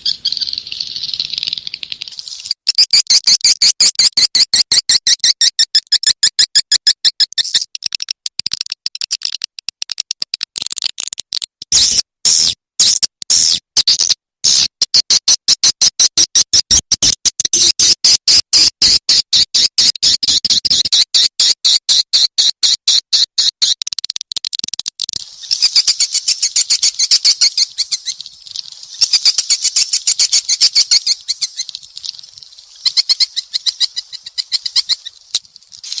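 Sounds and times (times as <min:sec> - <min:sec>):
swiftlet chirps: 0:25.2 - 0:36.0.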